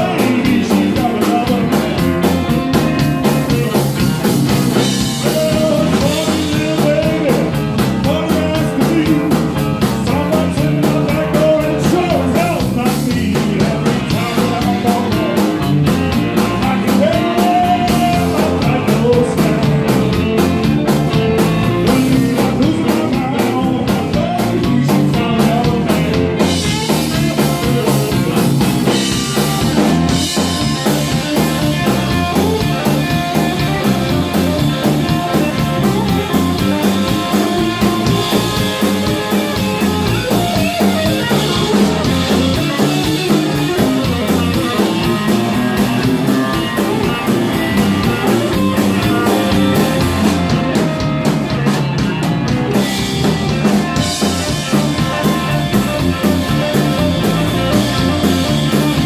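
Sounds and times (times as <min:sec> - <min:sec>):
drum kit beat: 0:00.0 - 0:59.0
electric guitar bending notes: 0:00.0 - 0:59.0
person singing: 0:00.0 - 0:59.0.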